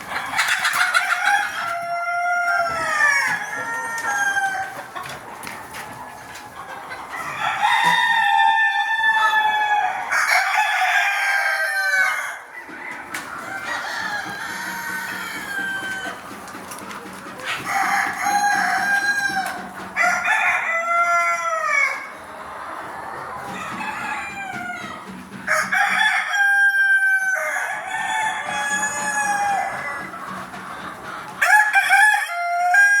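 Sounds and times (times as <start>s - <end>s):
roosters crowing: 0.0s - 5.0s, 7.1s - 16.4s, 17.4s - 33.0s
hens clucking: 0.0s - 33.0s.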